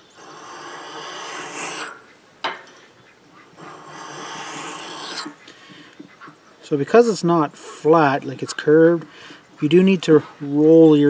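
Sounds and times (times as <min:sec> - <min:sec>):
blade scraping on sharpening stone: 0:00.0 - 0:02.0, 0:03.5 - 0:05.4.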